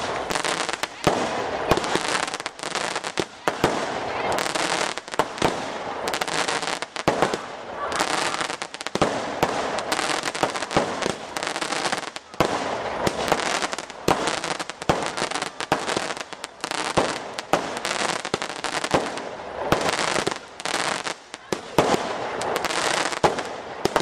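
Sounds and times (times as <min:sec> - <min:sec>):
fireworks bangs: 0:00.0 - 0:24.0
fireworks crackling: 0:00.0 - 0:24.0.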